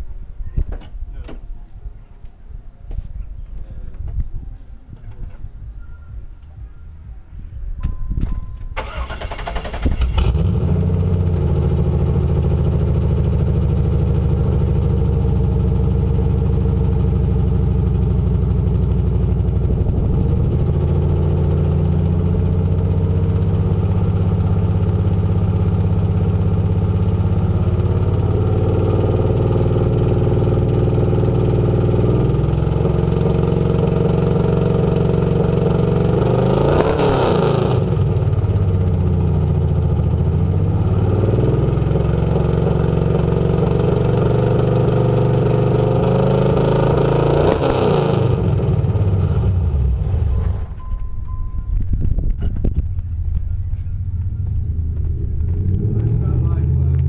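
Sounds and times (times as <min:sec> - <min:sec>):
engine revving: 0:08.8 - 0:50.8, 0:54.0 - 0:57.0
misfiring car engine: 0:08.8 - 0:57.0.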